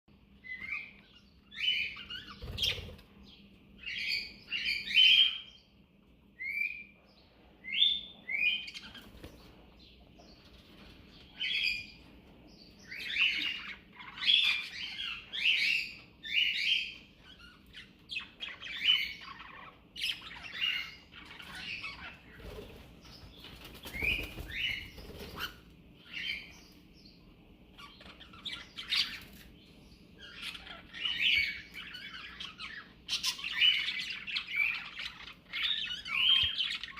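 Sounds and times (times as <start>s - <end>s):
parrot chirping: 0.4s - 2.8s, 3.8s - 5.6s, 12.8s - 22.4s, 30.2s - 36.9s.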